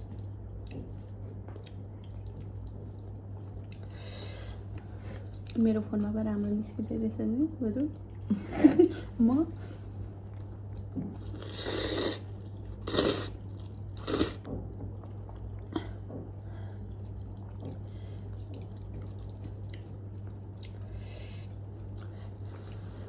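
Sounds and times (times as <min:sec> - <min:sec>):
quiet chewing: 0:00.0 - 0:05.7, 0:07.8 - 0:23.0
steady low hum: 0:00.0 - 0:23.0
noodle slurping: 0:11.1 - 0:14.5.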